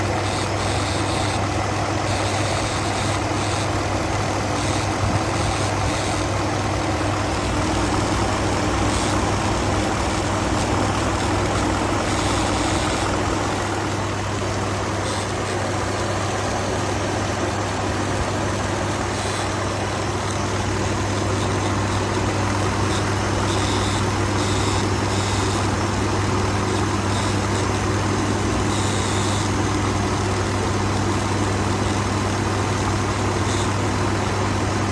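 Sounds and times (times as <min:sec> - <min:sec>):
engine idling with buzz: 0:00.0 - 0:34.9
second steady tone: 0:00.1 - 0:16.5, 0:18.9 - 0:25.8.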